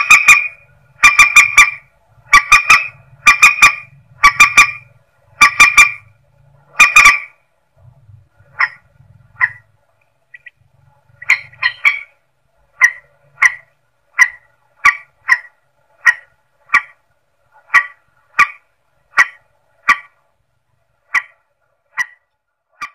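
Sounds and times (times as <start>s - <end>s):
rail bird call: 0.0s - 6.1s, 6.7s - 7.4s, 10.3s - 12.2s, 12.8s - 17.0s, 17.6s - 20.2s
faint low hum: 0.0s - 22.9s.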